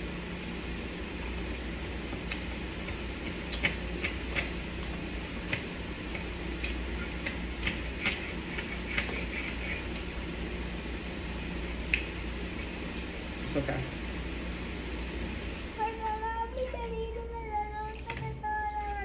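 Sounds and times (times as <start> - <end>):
low steady hum: 0.0 - 19.0
chewing and mouth sounds: 0.3 - 10.7, 11.7 - 12.8.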